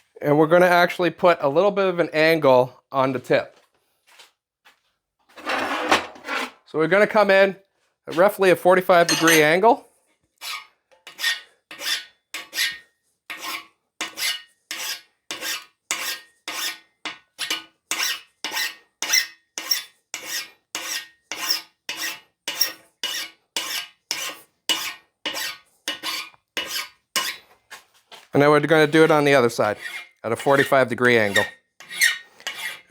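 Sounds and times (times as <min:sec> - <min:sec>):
hand file rasping on steel: 0:10.4 - 0:27.4, 0:29.0 - 0:32.9.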